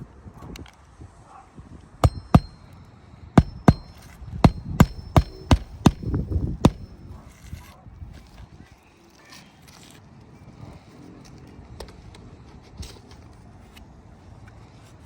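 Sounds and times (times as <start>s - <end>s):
hammer striking nails: 2.0s - 2.6s, 3.4s - 7.0s.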